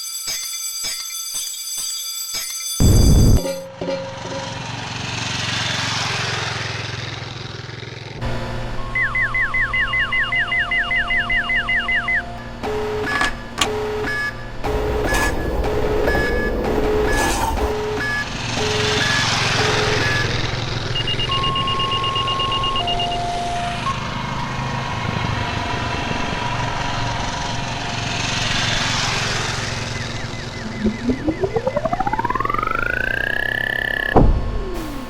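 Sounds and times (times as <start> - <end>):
hi-lo electronic alarm tones: 0.0 - 3.7, 29.1 - 35.0
steady held tones: 29.8 - 34.2.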